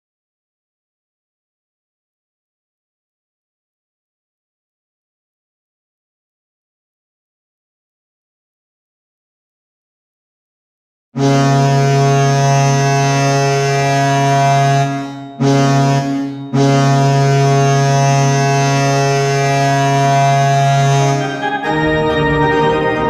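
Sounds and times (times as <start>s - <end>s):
low goal horn blasts: 11.2s - 23.0s
organ music: 11.2s - 23.0s.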